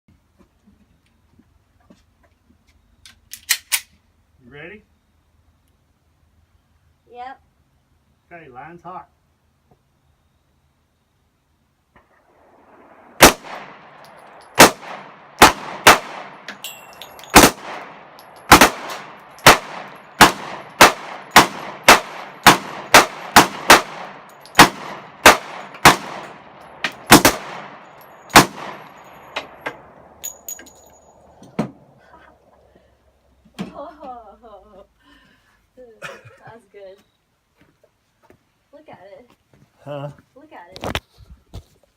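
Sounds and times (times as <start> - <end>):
gunshots: 12.6 - 16.5, 17.3 - 29.9.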